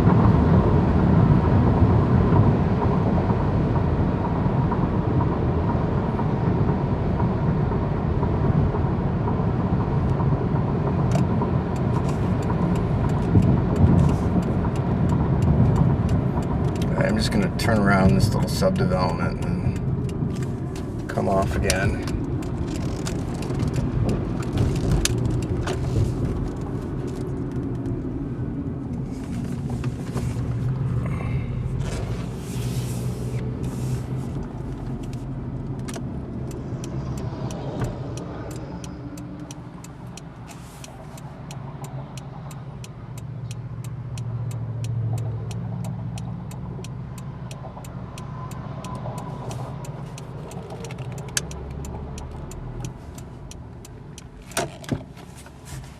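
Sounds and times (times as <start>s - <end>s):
car engine driving at low speed: 0.0s - 55.9s
regular ticking: 11.0s - 29.0s, 33.5s - 55.9s.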